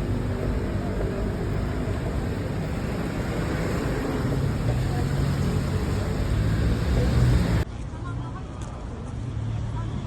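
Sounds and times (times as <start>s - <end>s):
engine rumbling: 0.0s - 7.7s.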